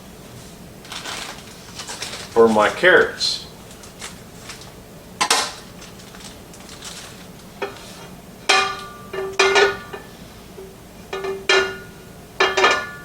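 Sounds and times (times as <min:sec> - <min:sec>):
metal cookware clinking: 0:08.5 - 0:10.1, 0:11.1 - 0:13.0.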